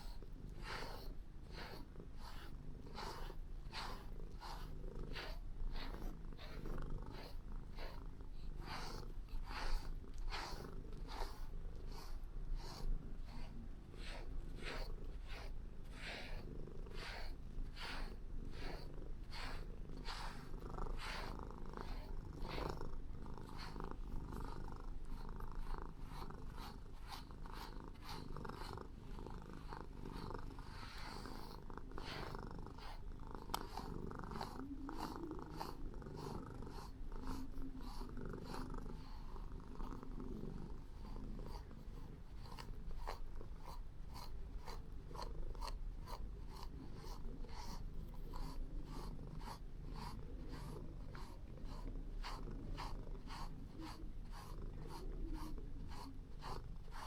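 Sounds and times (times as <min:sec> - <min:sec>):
cat purring: 0:00.0 - 0:57.0.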